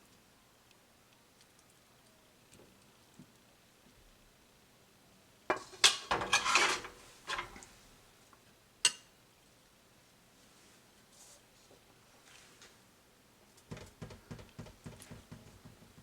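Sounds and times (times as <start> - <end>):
utensils clattering on dishes: 5.5 - 7.7.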